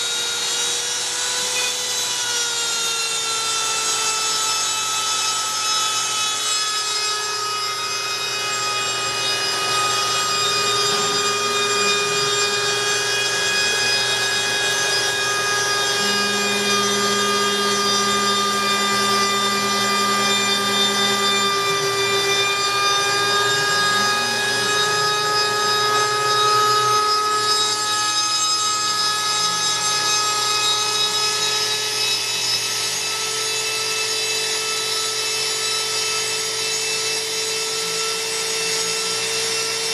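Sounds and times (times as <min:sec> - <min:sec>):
spindle whine: 0:00.0 - 0:39.9
stepper motors gliding tones: 0:05.6 - 0:32.8.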